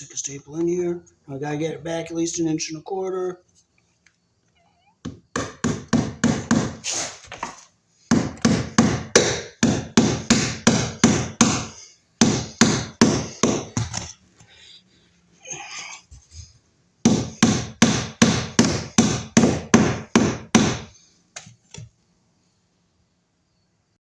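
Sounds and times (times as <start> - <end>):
hammer tapping staple into wood: 5.1 - 6.8, 8.1 - 14.1, 17.1 - 20.9.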